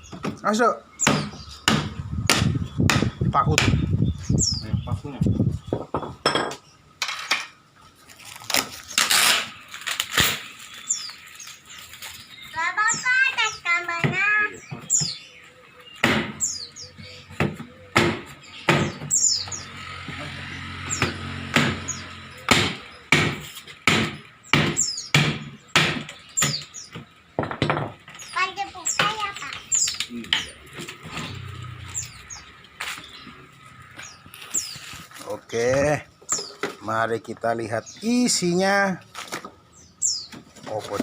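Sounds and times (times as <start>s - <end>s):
hammer striking wooden crate: 17.4s - 19.1s, 22.5s - 26.6s.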